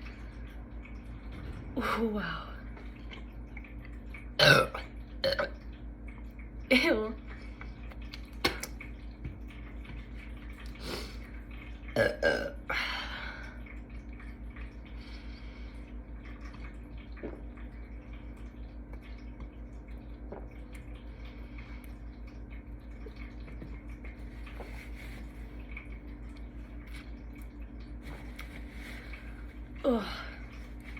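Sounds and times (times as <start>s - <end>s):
steady low hum: 0.0s - 30.9s
person burping: 4.4s - 5.6s, 12.0s - 12.7s.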